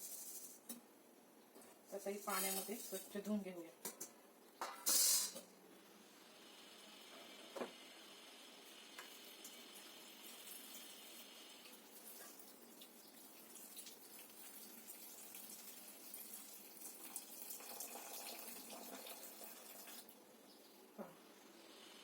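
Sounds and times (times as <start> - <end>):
water running and splashing: 9.2 - 20.1.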